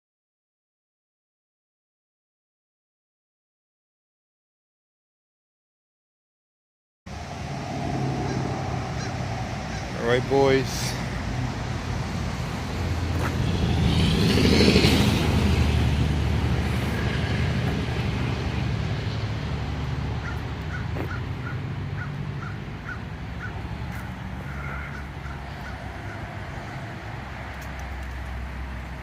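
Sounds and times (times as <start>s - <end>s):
vehicle engine running: 7.1s - 29.0s.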